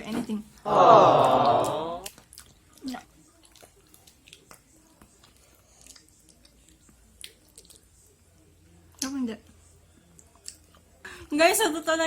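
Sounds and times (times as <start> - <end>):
chewing chocolate crunching: 2.0 - 9.2, 10.0 - 11.0.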